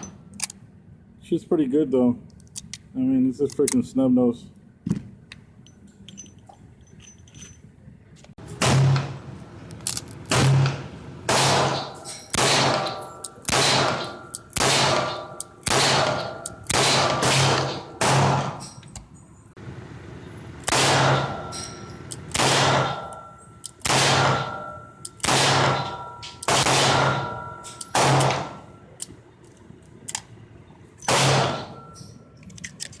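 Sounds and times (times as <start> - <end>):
gunshots with metallic ring: 8.5 - 9.2, 10.3 - 18.8, 20.7 - 28.7, 31.0 - 32.0.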